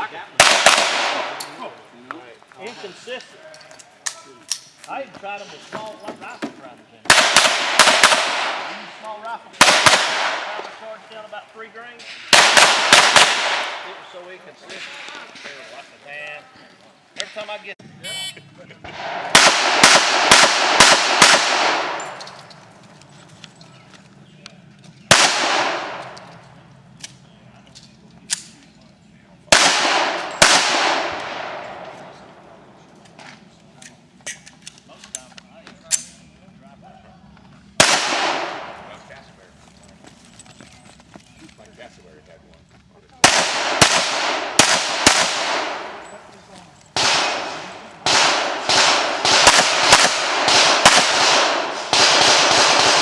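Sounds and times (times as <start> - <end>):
pistol shots echoing: 0.4 - 1.6, 7.1 - 8.9, 9.6 - 10.8, 12.2 - 14.0, 18.9 - 22.2, 25.1 - 26.2, 29.5 - 32.3, 37.8 - 38.9, 43.2 - 46.2, 46.9 - 53.0.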